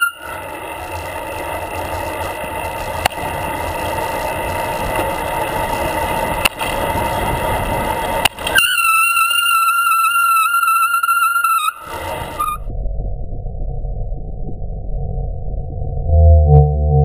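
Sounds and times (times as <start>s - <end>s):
brake squeal: 0.0s - 12.7s
bicycle tyre rumble: 0.0s - 16.1s.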